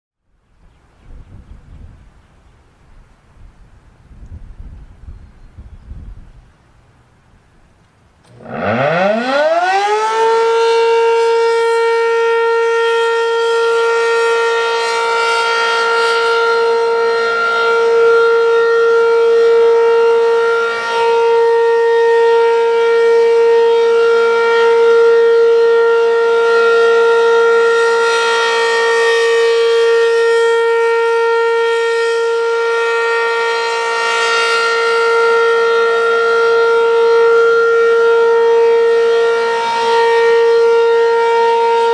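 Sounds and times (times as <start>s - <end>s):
outdoor warning siren: 7.8s - 41.9s.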